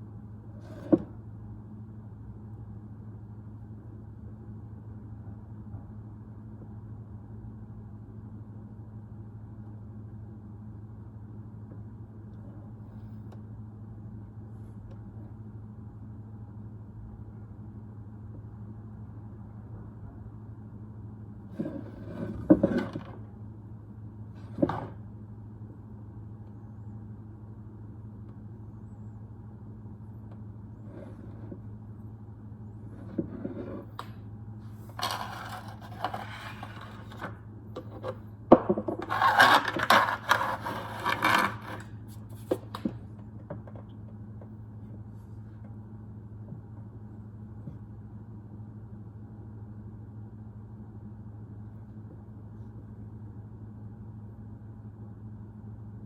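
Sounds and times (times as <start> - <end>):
steady low hum: 0.0 - 56.0
wood scraping and rubbing: 34.8 - 38.2, 39.0 - 42.8.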